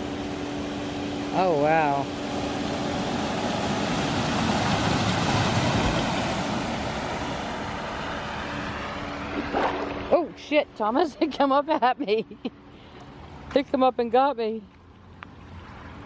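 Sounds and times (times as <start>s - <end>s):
water swishing from wheels: 0.0s - 10.4s, 14.7s - 16.0s
wake washing at water's edge: 0.0s - 11.5s, 12.8s - 16.0s
van engine rumble: 0.0s - 13.7s.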